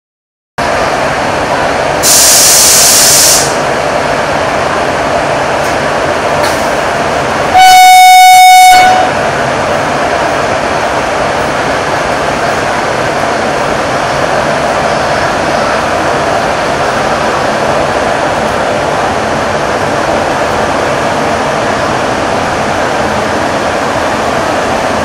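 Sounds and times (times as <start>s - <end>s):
rail station noise: 0.6s - 25.0s
loud hiss: 2.0s - 3.7s
locomotive horn: 7.5s - 9.2s.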